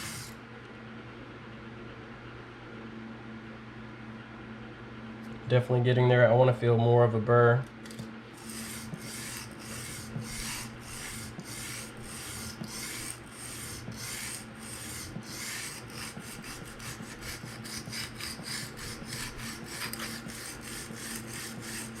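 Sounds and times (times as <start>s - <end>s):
knife scraping on sharpening stone: 8.4s - 21.9s.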